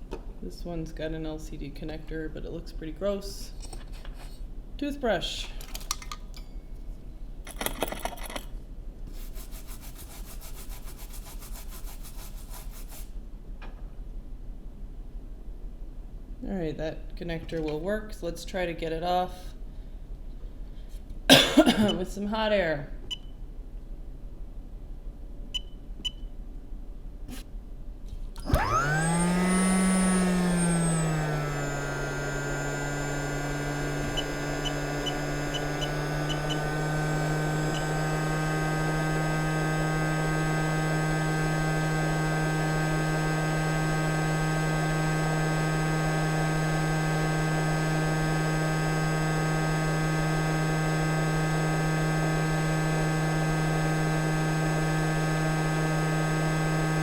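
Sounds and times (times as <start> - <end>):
hot air blower whine: 28.4 - 57.0.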